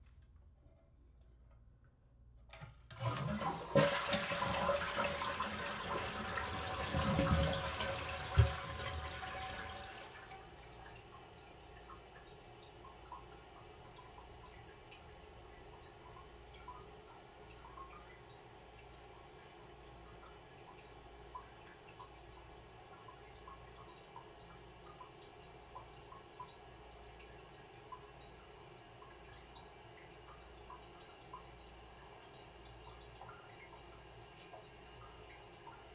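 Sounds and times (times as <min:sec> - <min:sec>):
toilet flushing: 0:02.6 - 0:35.9
small water drips: 0:10.0 - 0:35.9.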